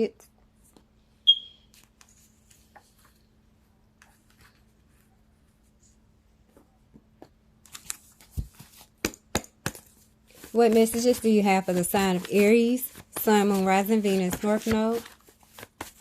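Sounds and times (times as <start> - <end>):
cards being shuffled: 7.6 - 16.0.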